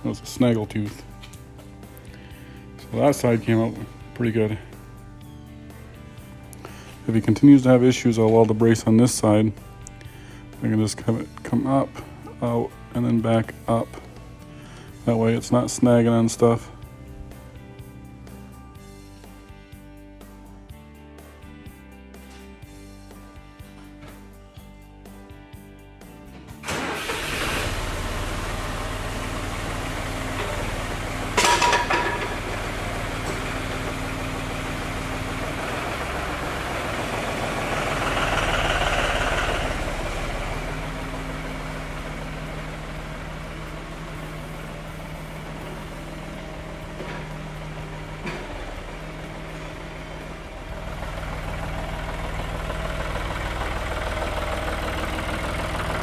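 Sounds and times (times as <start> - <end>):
diesel tractor engine idling: 26.6 - 56.0
metallic clank: 31.4 - 32.6.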